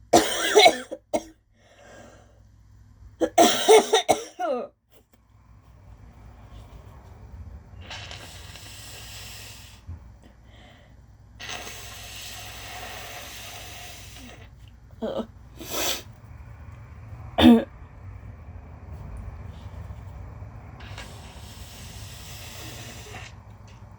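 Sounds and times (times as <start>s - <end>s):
person blowing nose: 7.8s - 9.8s, 11.4s - 14.5s, 15.6s - 16.1s, 20.8s - 23.4s
explosive bursts from nose: 7.8s - 9.9s, 11.4s - 14.5s, 20.8s - 23.5s.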